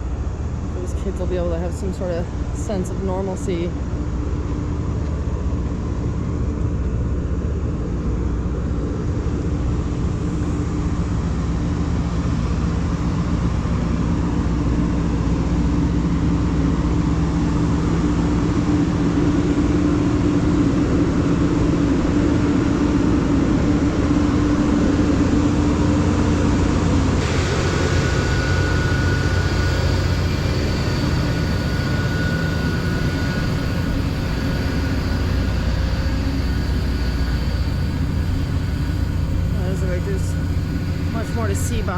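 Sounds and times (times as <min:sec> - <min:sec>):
higher whine: 0:16.2 - 0:41.9
engine droning: 0:16.3 - 0:41.9.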